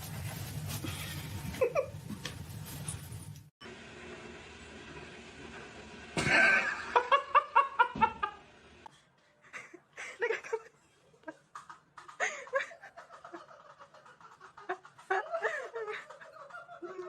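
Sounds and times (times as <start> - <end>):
person laughing: 12.1 - 17.0.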